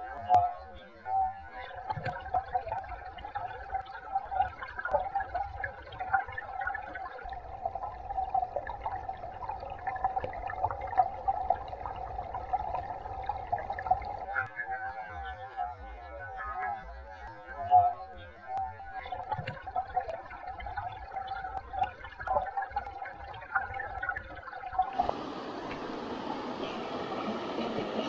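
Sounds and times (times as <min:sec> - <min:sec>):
muffled water gurgling underwater: 0:00.0 - 0:28.0.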